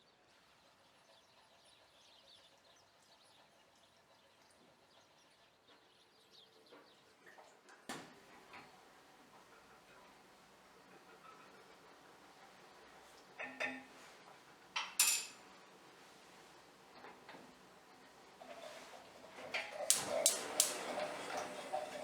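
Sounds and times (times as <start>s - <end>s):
sharp click: 19.9s - 21.0s.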